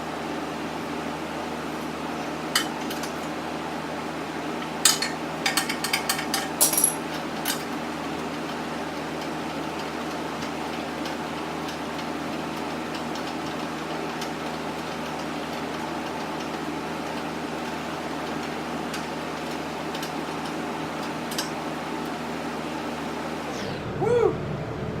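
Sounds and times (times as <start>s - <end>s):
steady background hum: 0.0s - 25.0s
metal tools clinking and knocking: 4.8s - 7.7s.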